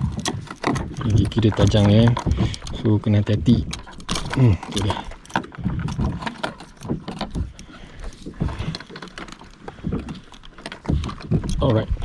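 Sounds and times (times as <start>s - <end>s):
knocks and clicks on plastic kayak: 0.0s - 12.0s.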